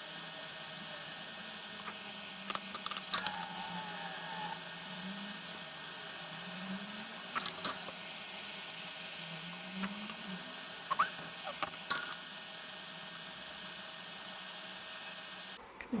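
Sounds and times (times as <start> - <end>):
small clicks of tools on electronics: 1.8 - 4.1.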